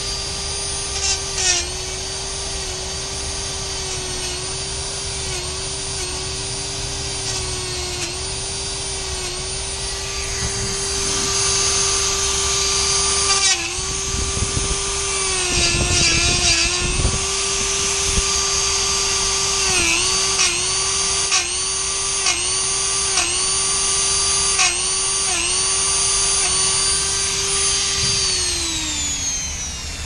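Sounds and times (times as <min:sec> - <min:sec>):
rotary tool wire wheel whining: 0:00.0 - 0:30.0.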